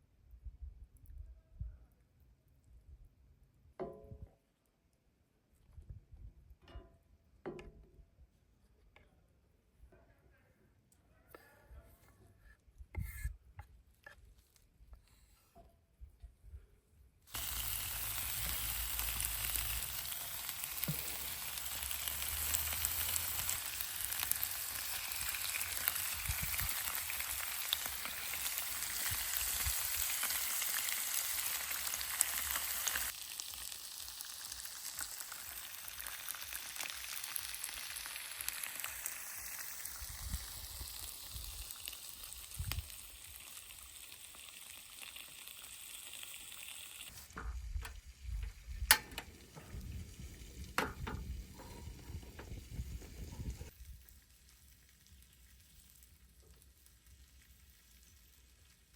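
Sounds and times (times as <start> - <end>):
food sizzling in a frying pan: 17.3 - 58.9.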